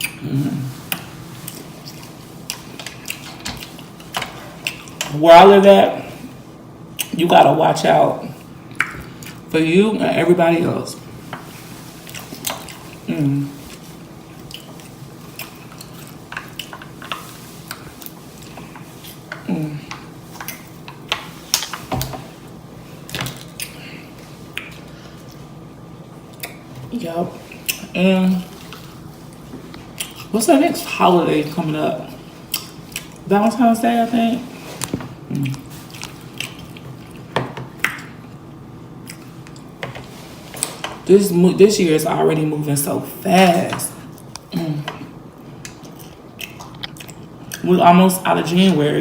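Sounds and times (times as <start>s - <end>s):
low vocal hum: 0.0s - 0.9s, 44.5s - 45.2s
chewing with wet mouth smacking: 0.9s - 5.1s, 8.4s - 9.5s, 12.0s - 22.1s, 24.5s - 25.5s, 26.3s - 26.7s, 28.5s - 30.4s, 32.4s - 33.3s, 34.8s - 38.4s, 39.0s - 39.8s, 45.4s - 47.7s
chewing and lip smacking: 14.4s - 19.2s, 28.6s - 30.3s, 34.8s - 38.3s, 39.0s - 39.7s, 45.6s - 47.6s.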